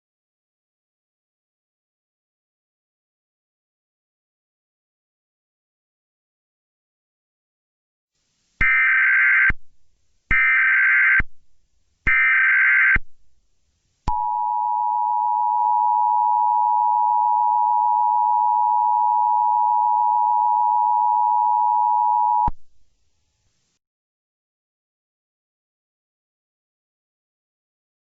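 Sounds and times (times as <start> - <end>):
steady dual tone alert signal: 14.1 - 22.6.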